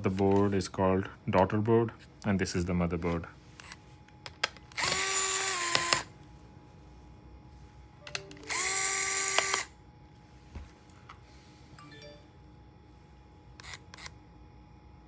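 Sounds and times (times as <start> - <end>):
electric screwdriver whine: 4.7 - 6.1, 8.2 - 9.7, 13.6 - 14.1.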